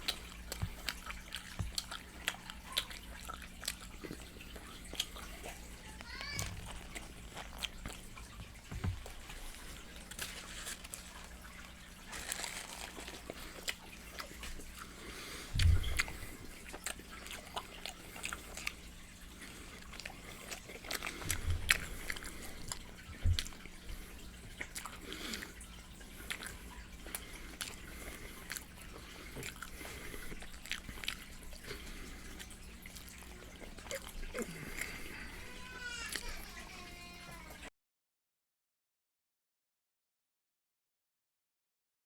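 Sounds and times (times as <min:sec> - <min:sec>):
chewing with mouth smacks: 0:00.0 - 0:35.2
dull low thumps: 0:15.6 - 0:16.1.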